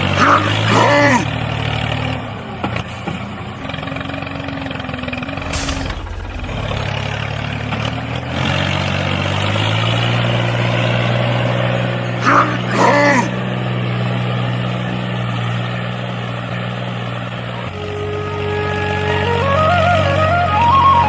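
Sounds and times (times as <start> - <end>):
tractor engine idling: 1.3 - 8.2
air hiss burst: 5.3 - 7.3.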